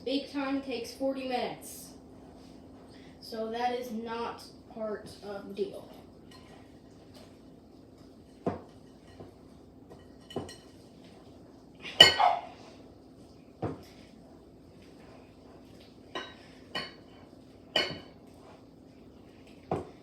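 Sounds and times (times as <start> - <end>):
bowls and utensils clinking: 8.1 - 11.1.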